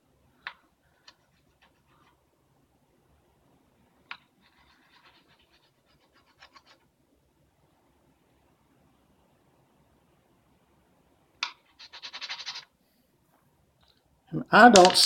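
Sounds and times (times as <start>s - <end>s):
plastic scratching on cutting board: 4.1s - 6.8s, 11.7s - 12.7s
quick scratchy ticks: 11.4s - 12.7s.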